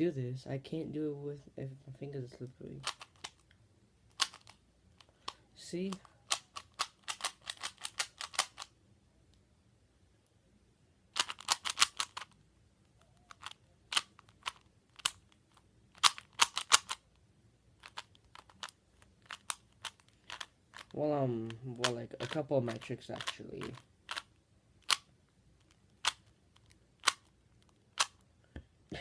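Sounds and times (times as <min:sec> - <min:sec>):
rubik's cube clicking: 0:02.8 - 0:03.5, 0:04.1 - 0:08.7, 0:11.1 - 0:12.4, 0:13.0 - 0:17.2, 0:17.8 - 0:28.3.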